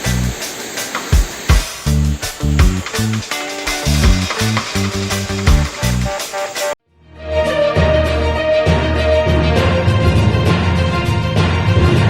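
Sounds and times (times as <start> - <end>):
music with bass and kick drum: 1.2 - 6.2.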